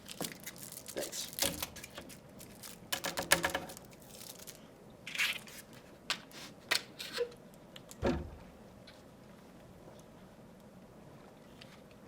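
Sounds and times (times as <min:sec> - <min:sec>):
rustling: 0:03.6 - 0:05.8.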